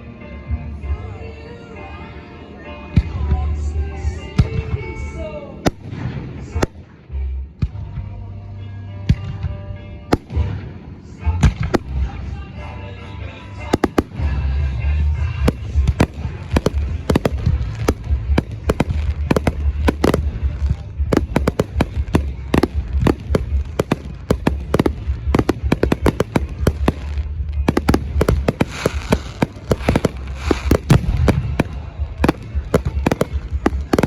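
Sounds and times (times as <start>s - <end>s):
firework shells bursting: 13.8s - 14.3s, 15.5s - 34.0s
deep rumble: 14.0s - 34.0s.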